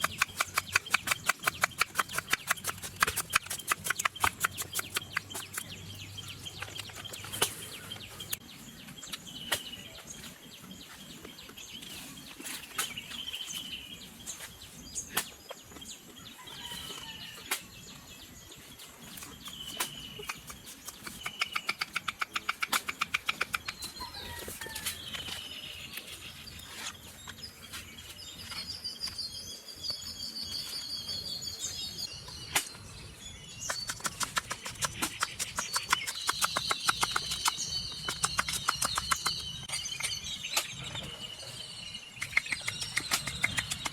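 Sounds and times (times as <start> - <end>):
birds chirping: 0.0 - 43.9
sharp clicks: 19.8 - 24.0, 33.7 - 40.7, 42.2 - 43.9.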